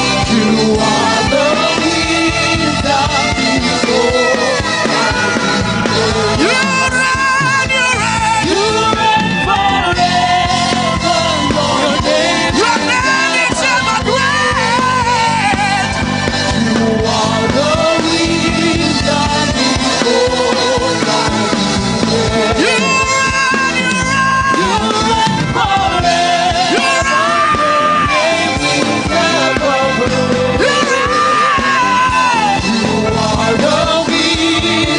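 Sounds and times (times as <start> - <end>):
person singing: 0.0 - 34.9
sustained instrumental accompaniment: 0.0 - 34.9.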